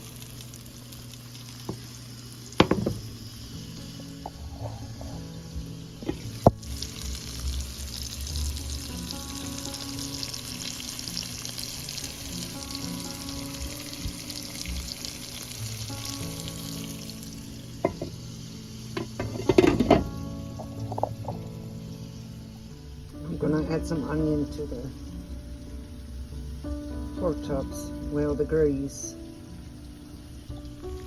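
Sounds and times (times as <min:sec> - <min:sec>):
meat sizzling in a skillet: 0:00.0 - 0:31.0
sharp knock: 0:02.6 - 0:03.0.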